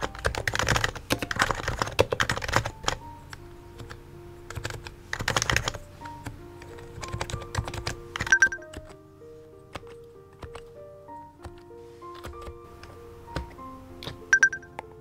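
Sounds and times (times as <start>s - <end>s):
keyboard typing: 0.0s - 9.0s, 9.7s - 15.0s
background music with soft notes: 0.0s - 15.0s.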